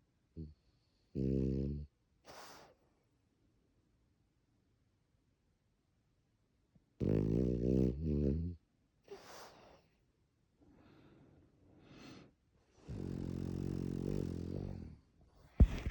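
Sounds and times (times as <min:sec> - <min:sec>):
dog snoring: 0:00.4 - 0:02.7, 0:07.0 - 0:09.8, 0:12.8 - 0:15.9
dog snuffly breaths: 0:02.3 - 0:02.8, 0:09.1 - 0:10.0, 0:11.8 - 0:15.9.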